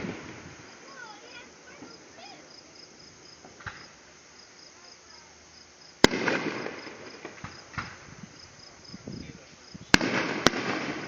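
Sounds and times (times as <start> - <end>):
firework bang: 0.0 - 2.4, 3.4 - 4.0, 6.0 - 11.0
crickets chirping: 0.0 - 11.0
firework crackling: 0.0 - 11.0.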